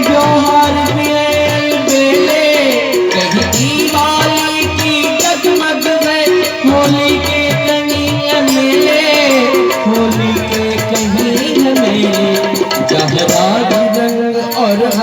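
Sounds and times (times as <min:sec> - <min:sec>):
tabla rhythm: 0:00.0 - 0:15.0.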